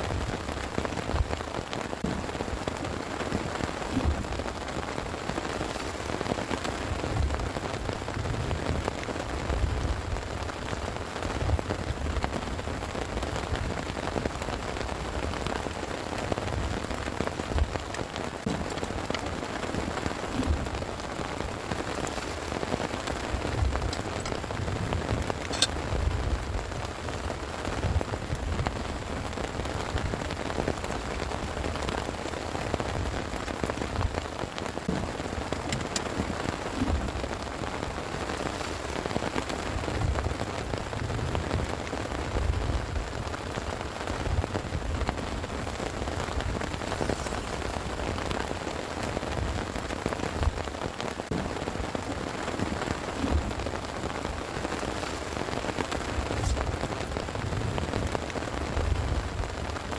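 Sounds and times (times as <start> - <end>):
low rumbling: 0.0 - 10.5
heavy rain falling: 0.0 - 59.9.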